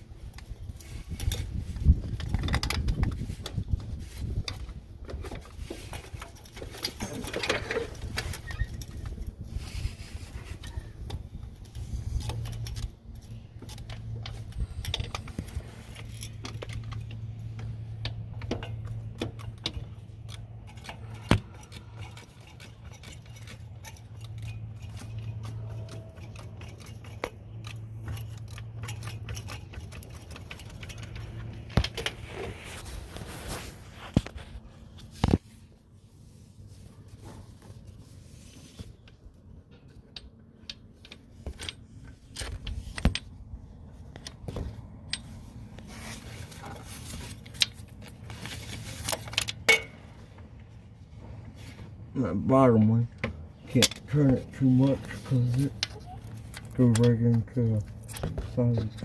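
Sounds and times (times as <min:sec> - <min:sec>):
low steady hum: 0:00.0 - 0:59.0
metal tools clinking: 0:05.0 - 0:09.6, 0:10.4 - 0:32.2, 0:39.7 - 0:50.1, 0:52.9 - 0:59.0.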